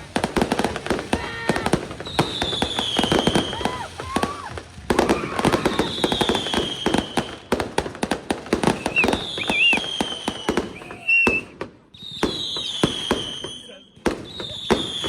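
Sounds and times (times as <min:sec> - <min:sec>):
fireworks crackling bangs: 0:00.0 - 0:15.0
fireworks whistles: 0:00.0 - 0:15.0.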